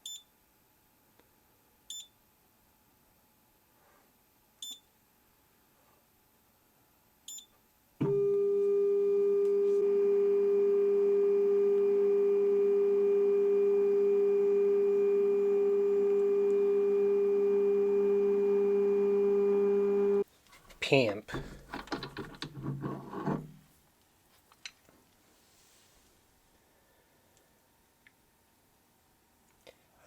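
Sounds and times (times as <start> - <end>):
loud pitched hum: 8.2 - 20.2.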